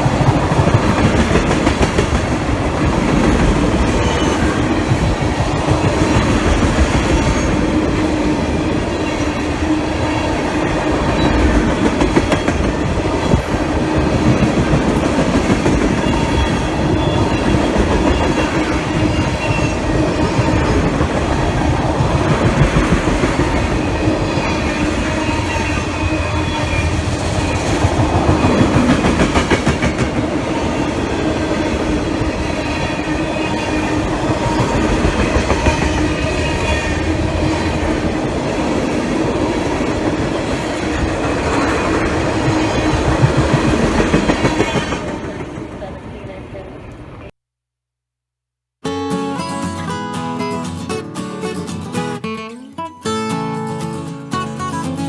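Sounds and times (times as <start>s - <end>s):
train wheels rumbling over rail joints: 0.0s - 46.4s
wheel squeal: 3.8s - 4.7s, 15.9s - 20.8s.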